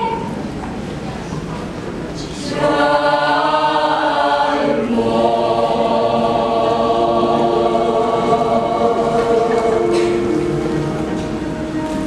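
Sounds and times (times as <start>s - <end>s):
choir singing in harmony: 2.4s - 12.0s.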